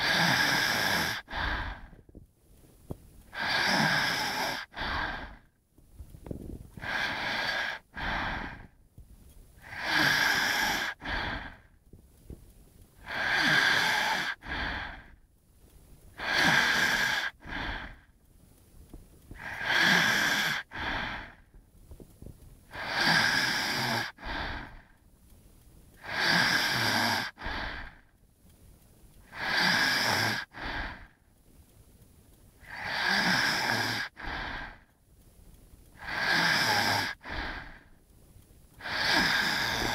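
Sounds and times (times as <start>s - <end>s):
person snoring: 0.0s - 2.0s, 3.3s - 5.4s, 6.8s - 8.7s, 9.6s - 11.7s, 13.0s - 15.1s, 16.2s - 18.0s, 19.4s - 21.4s, 22.7s - 24.8s, 26.0s - 28.0s, 29.2s - 31.1s, 32.6s - 34.8s, 36.0s - 37.9s, 38.8s - 39.9s.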